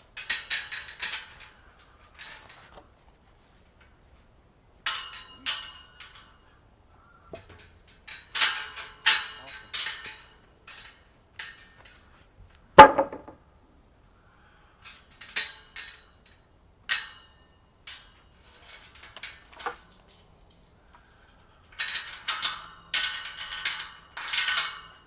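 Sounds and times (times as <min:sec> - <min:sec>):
metal hardware clinking and jangling: 0:00.2 - 0:01.6, 0:04.9 - 0:06.4, 0:07.4 - 0:12.1, 0:14.8 - 0:25.0
loud knock: 0:12.8 - 0:13.4.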